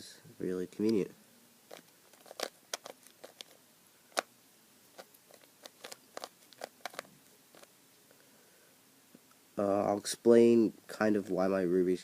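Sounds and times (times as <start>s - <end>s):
puzzle cube plastic clicks: 1.7s - 4.3s, 4.9s - 7.7s.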